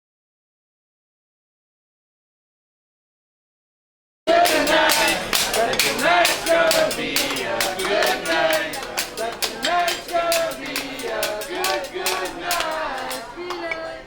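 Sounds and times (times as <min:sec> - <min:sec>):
music with clicking beat: 0:04.3 - 0:13.6.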